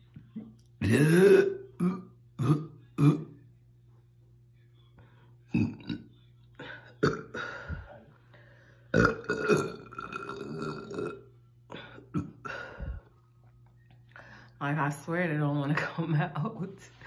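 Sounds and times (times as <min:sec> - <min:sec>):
woman burping: 0:00.8 - 0:03.4, 0:05.5 - 0:06.1, 0:06.9 - 0:07.7, 0:08.9 - 0:12.8.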